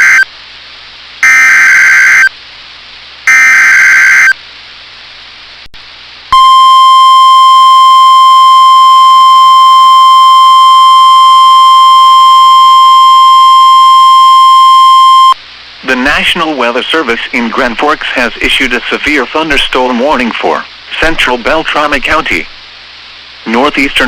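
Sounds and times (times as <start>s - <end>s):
loud steady alarm tone: 0.0s - 0.3s, 1.2s - 2.3s, 3.2s - 4.4s
data bursts squawking: 3.3s - 4.4s.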